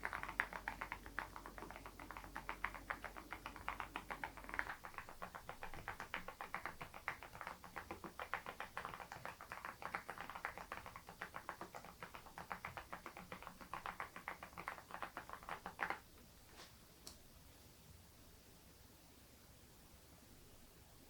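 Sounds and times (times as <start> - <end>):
fast typing on mechanical keyboard: 0.0 - 16.0.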